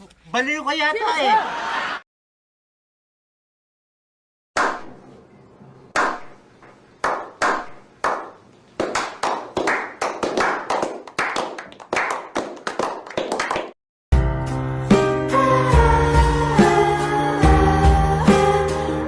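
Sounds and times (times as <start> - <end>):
person hand clapping: 6.0 - 13.8.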